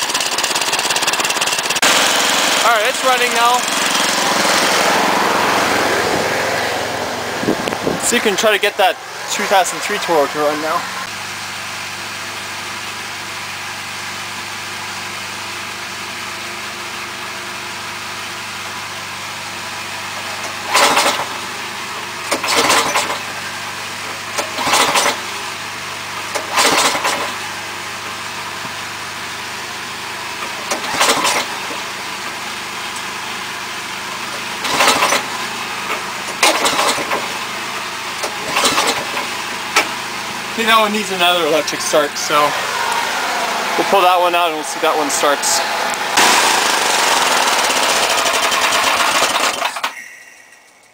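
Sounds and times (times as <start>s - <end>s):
engine cranking without starting: 0.0s - 5.0s, 20.1s - 27.6s, 30.4s - 33.2s, 34.0s - 50.9s
snowblower engine running: 0.0s - 50.9s.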